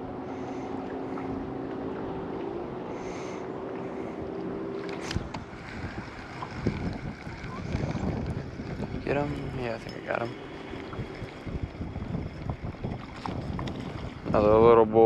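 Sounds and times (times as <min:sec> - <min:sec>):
low motor hum: 0:00.0 - 0:15.0
wind noise on microphone: 0:04.9 - 0:15.0.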